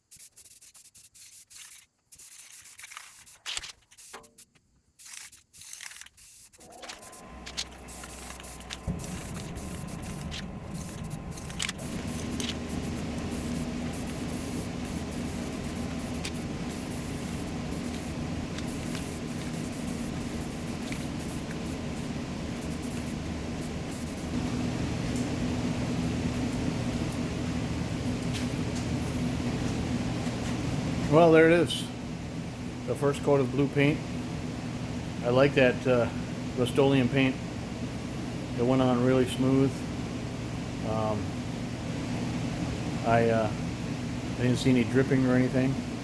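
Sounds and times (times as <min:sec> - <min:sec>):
spray can hissing: 0:00.0 - 0:24.4
mechanical drone with hum: 0:06.6 - 0:41.8.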